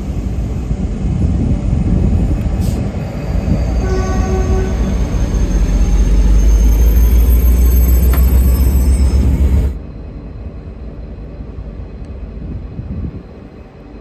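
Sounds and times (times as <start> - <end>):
diesel train rumbling: 0.0 - 14.0
high-pitched squeal: 2.8 - 9.8.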